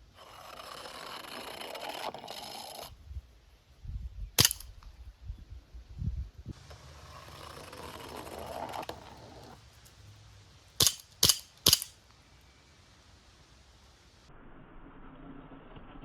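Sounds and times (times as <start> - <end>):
clay target rolling and scraping: 0.2 - 3.0, 6.5 - 9.6
sharp pistol shots: 4.4 - 4.8, 10.8 - 12.0.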